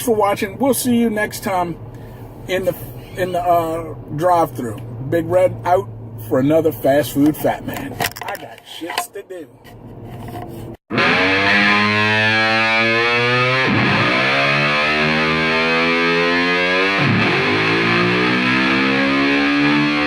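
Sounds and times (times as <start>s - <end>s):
rock music distorted electric guitar: 10.9s - 20.0s.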